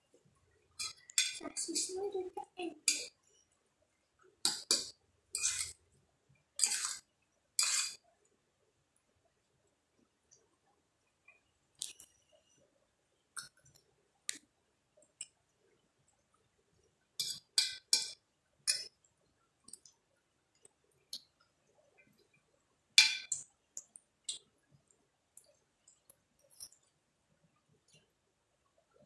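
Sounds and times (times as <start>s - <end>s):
cutlery clinking against plate: 0.8s - 1.4s, 23.0s - 23.4s.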